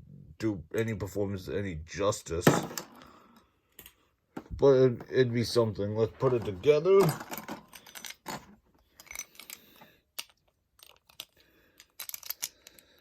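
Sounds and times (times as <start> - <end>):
plastic and metal parts clicking: 6.3 - 13.0.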